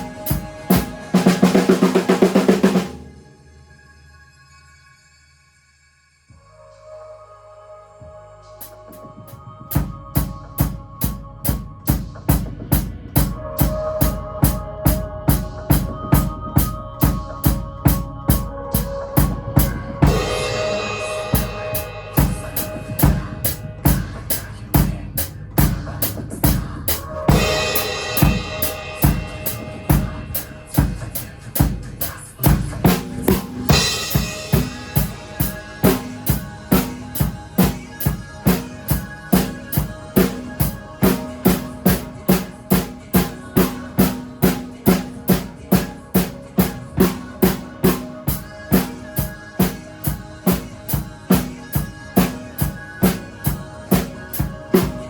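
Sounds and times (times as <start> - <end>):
drum kit playing: 0.0 - 3.2, 9.7 - 55.0
pop backing track: 0.0 - 3.2, 8.6 - 55.0
cymbal crashes: 20.0 - 24.1, 27.3 - 45.4.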